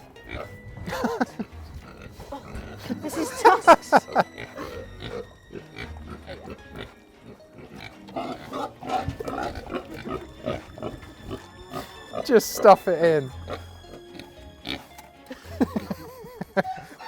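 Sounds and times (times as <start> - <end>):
pig grunting while eating: 0.0 - 15.2.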